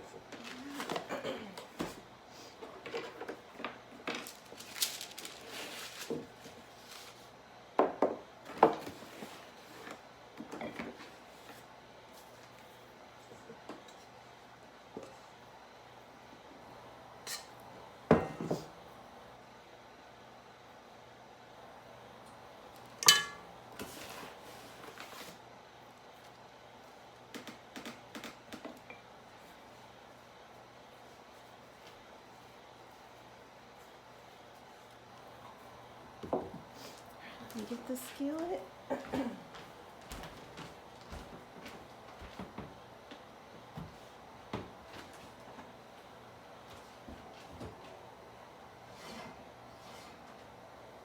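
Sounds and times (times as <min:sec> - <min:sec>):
utensils and dishes clattering: 0:23.0 - 0:23.5.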